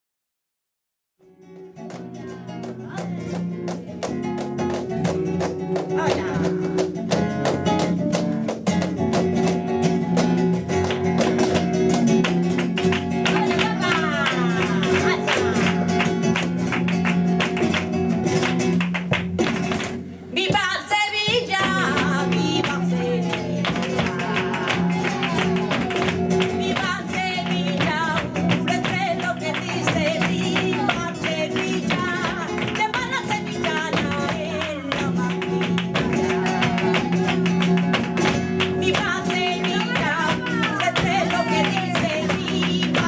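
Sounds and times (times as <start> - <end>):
flamenco guitar strumming: 1.2 - 43.0
woman singing: 1.8 - 5.0, 5.7 - 8.2, 12.5 - 16.2, 20.3 - 43.0.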